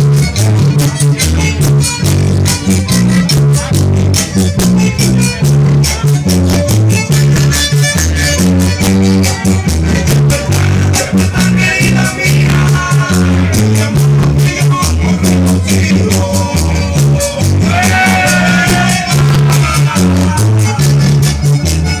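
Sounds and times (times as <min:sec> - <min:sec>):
latin dance music: 0:00.0 - 0:22.0.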